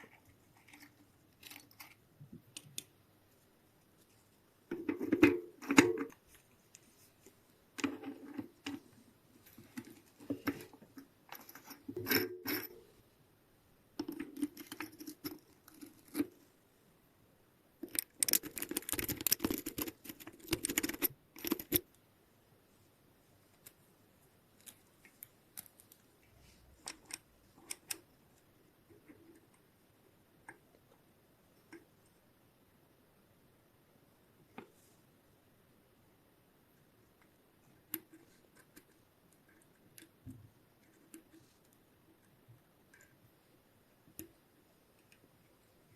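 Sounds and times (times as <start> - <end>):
metallic clicking and rattling: 17.8 - 21.8.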